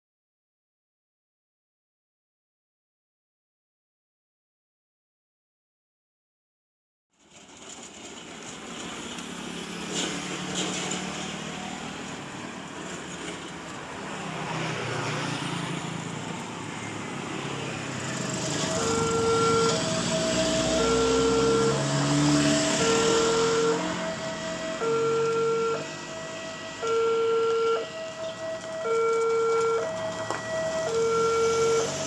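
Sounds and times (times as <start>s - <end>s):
road traffic passing: 7.2s - 32.0s
two-tone crossing warning alarm: 14.6s - 32.0s.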